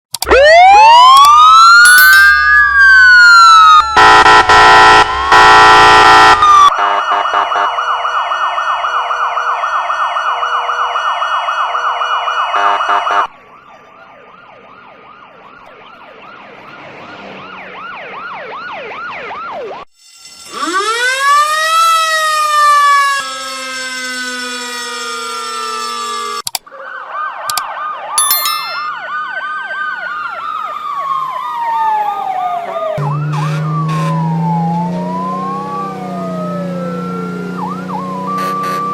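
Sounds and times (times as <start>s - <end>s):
emergency vehicle sirens: 0.1s - 38.9s
low steady horn: 33.0s - 34.6s, 37.0s - 38.9s.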